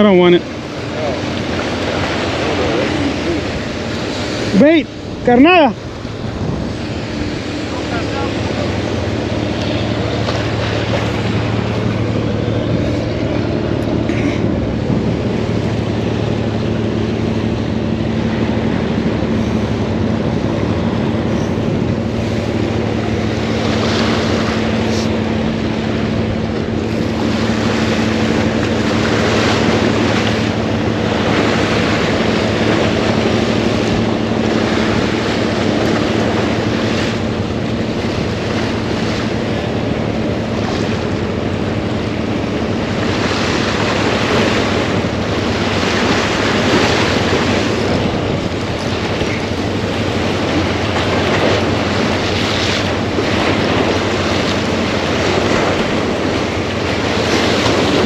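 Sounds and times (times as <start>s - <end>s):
low engine hum: 0.0s - 58.0s
waves: 0.0s - 58.0s
wind buffeting microphone: 1.3s - 34.7s, 47.1s - 58.0s.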